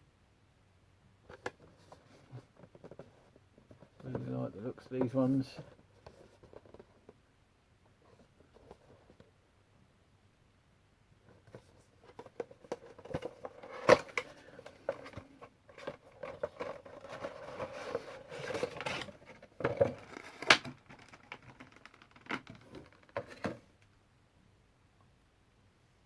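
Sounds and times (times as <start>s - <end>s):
cardboard and plastic rustling: 1.3s - 7.2s, 11.3s - 23.8s.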